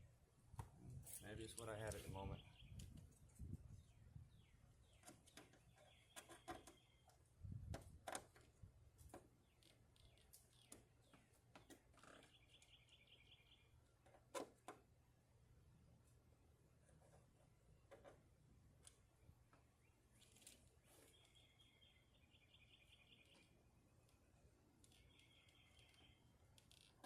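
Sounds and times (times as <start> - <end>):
faint bird chirps and trills: 2.0 - 7.4, 9.1 - 14.4, 18.8 - 27.0.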